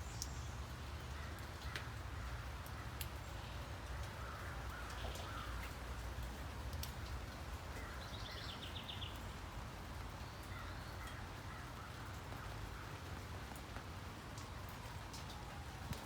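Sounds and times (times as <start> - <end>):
steady rain falling: 0.0 - 16.0
sharp drip clicks: 3.9 - 7.9.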